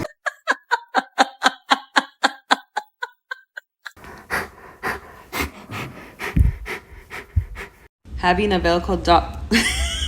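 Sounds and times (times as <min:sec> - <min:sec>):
dog panting: 0:04.0 - 0:07.9.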